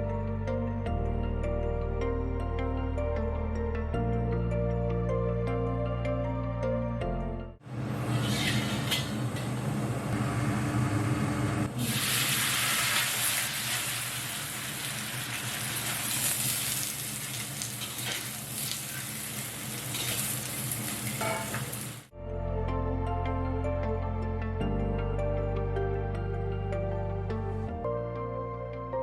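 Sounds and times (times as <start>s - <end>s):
food sizzling in a wok: 11.8s - 22.1s.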